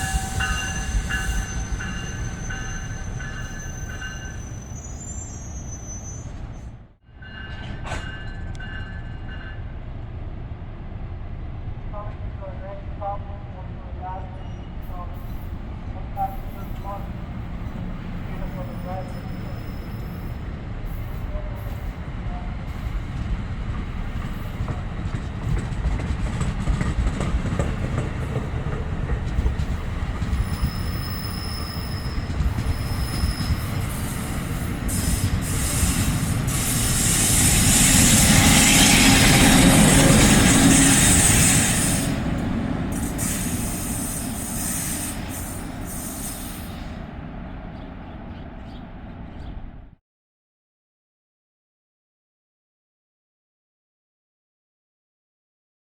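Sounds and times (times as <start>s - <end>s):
high wheel squeal: 0.0s - 6.7s, 18.4s - 21.2s, 30.4s - 42.2s
train wheels rumbling on rails: 0.0s - 12.3s, 14.5s - 49.9s.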